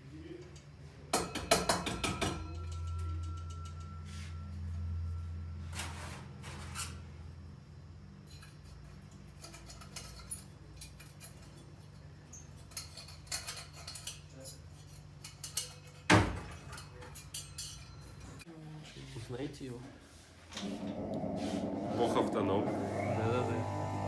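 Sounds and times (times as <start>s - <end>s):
metal tools clinking: 8.2s - 18.5s
steady low hum: 20.2s - 24.0s.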